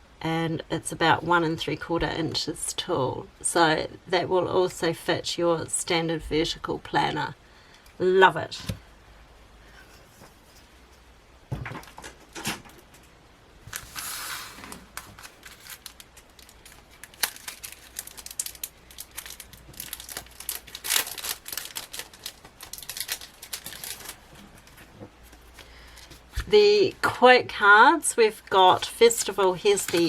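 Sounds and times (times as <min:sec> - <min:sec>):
packaging and paper crinkling: 0:13.7 - 0:26.5, 0:28.7 - 0:30.0.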